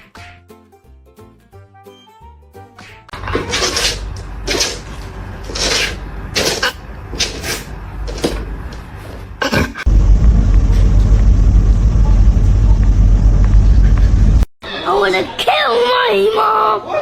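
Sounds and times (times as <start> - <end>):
loud steady low rumble: 9.9 - 14.5.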